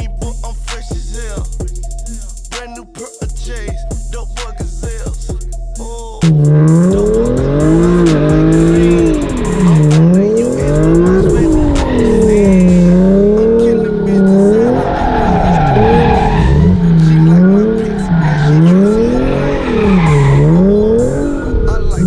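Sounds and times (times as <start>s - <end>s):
car engine revving: 4.8s - 22.0s
tire squeal: 6.2s - 22.0s.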